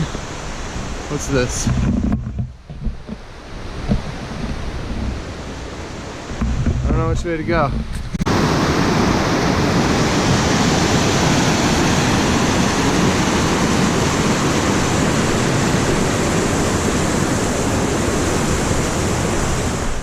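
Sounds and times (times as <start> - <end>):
stream rushing: 0.0 - 20.0.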